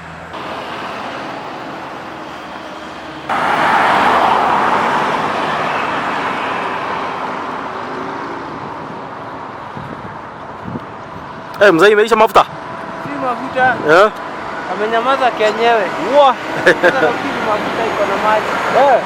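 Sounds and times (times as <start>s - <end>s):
vehicle passing close: 0.0s - 11.4s.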